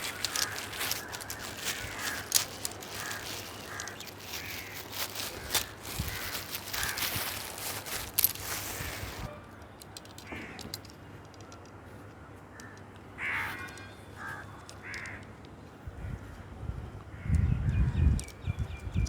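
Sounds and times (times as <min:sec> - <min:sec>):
crow cawing: 0:00.0 - 0:07.9, 0:12.5 - 0:15.3
rustling with sharp clicks: 0:00.0 - 0:15.8.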